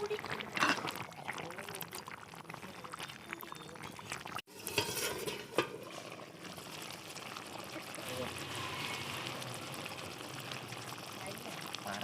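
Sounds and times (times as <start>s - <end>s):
spoon scraping pot: 4.5s - 6.2s.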